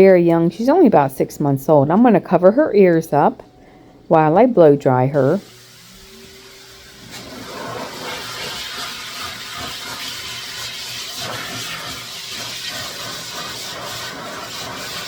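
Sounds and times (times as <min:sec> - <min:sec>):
blow dryer hissing: 0:05.2 - 0:15.0.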